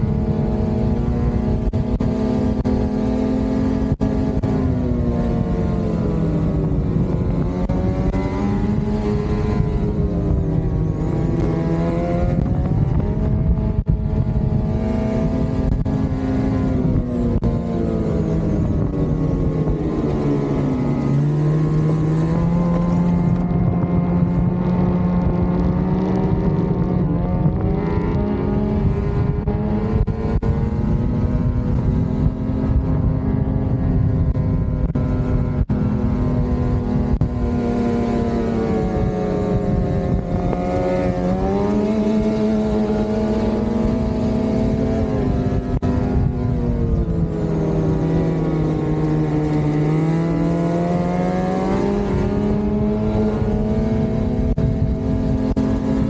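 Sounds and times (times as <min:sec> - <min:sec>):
snowmobile engine running: 0:00.0 - 0:56.0.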